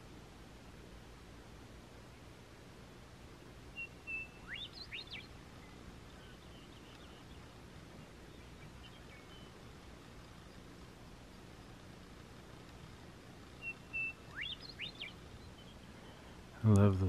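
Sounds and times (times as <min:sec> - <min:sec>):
low background hiss: 0:00.0 - 0:17.0
bird singing whistled song: 0:03.7 - 0:07.5, 0:08.3 - 0:09.6, 0:13.6 - 0:15.8.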